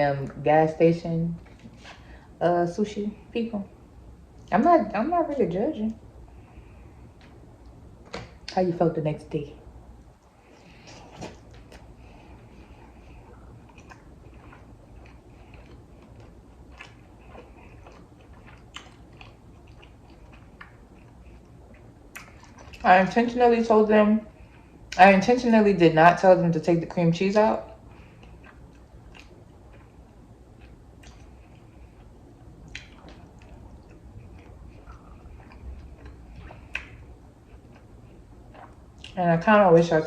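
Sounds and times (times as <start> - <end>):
close-up chewing: 10.2 - 22.9, 27.8 - 39.2
lip and tongue clicks: 30.6 - 37.0.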